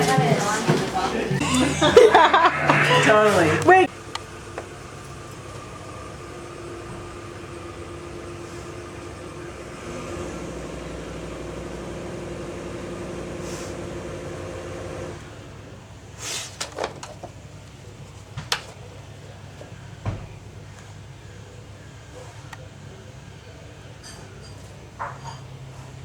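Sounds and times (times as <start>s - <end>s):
machine hum: 0.0s - 4.5s.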